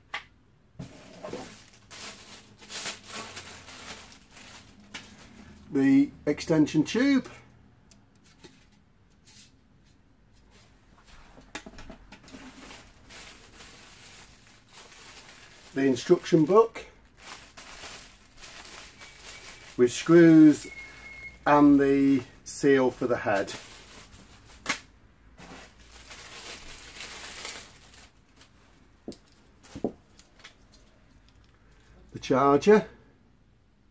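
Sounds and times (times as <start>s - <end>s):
rustling of unpacking parts: 0.8s - 5.6s, 10.5s - 21.4s, 23.0s - 31.9s.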